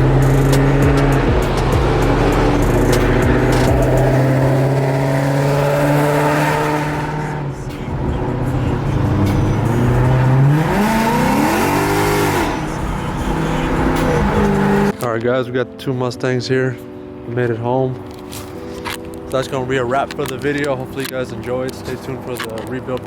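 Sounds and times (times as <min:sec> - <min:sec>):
car engine and exhaust revving: 0:00.0 - 0:14.9.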